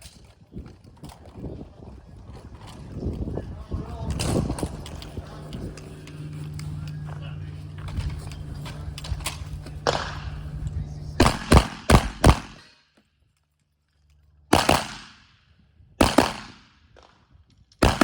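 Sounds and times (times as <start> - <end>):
shotgun shots with echo: 9.8 - 10.5, 11.2 - 12.7, 14.5 - 15.3, 16.0 - 16.8, 17.8 - 18.0.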